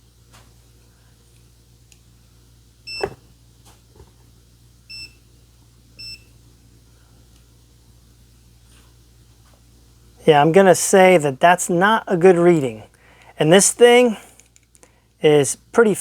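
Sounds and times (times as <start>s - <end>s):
multimeter beeping: 2.9s - 3.2s, 4.9s - 5.2s, 6.0s - 6.3s.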